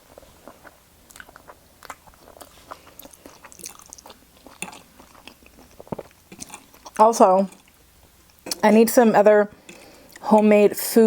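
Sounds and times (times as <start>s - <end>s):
chewing and biting food: 0.1s - 8.7s.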